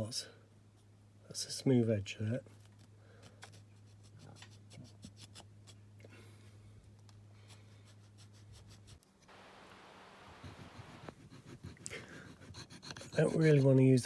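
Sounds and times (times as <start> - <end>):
hand file scraping: 10.3 - 14.0.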